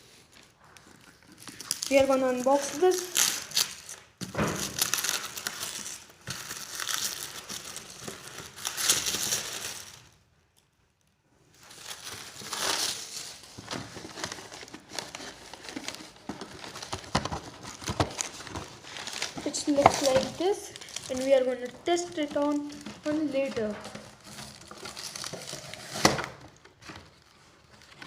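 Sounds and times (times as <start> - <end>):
wrapping crinkling and tearing: 0.0 - 10.8, 11.5 - 28.0.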